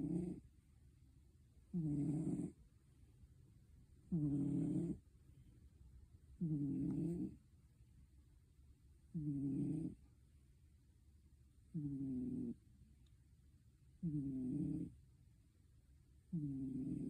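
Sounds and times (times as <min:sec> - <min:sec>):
pet snoring: 0:00.0 - 0:00.4, 0:01.7 - 0:02.6, 0:04.1 - 0:05.0, 0:06.4 - 0:07.4, 0:09.1 - 0:10.0, 0:11.7 - 0:12.6, 0:14.0 - 0:15.0, 0:16.3 - 0:17.0.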